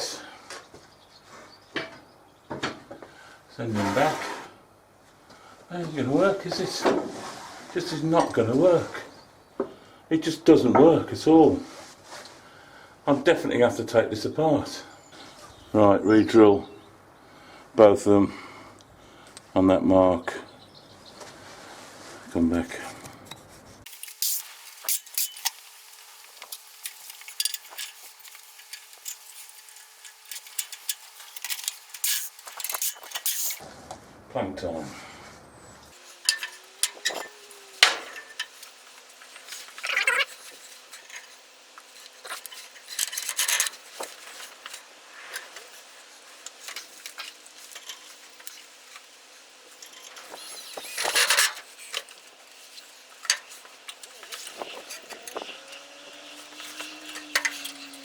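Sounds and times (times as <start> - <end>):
wooden plank scraping: 3.8 - 4.6
tools clicking and scraping: 23.3 - 33.6, 36.0 - 58.0.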